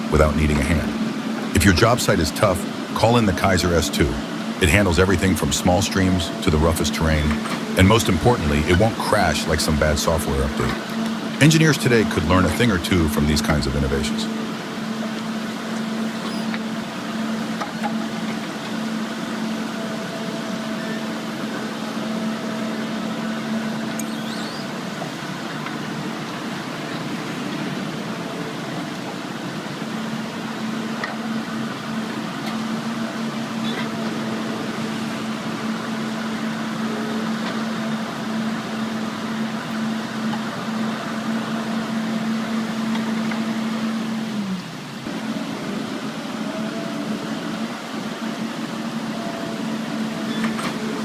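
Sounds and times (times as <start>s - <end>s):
diesel engine running: 0.0s - 51.0s.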